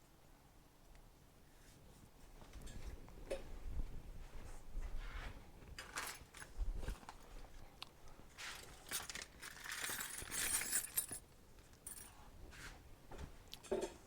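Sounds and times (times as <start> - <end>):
small metal parts clinking: 5.8 - 6.5, 8.4 - 12.1.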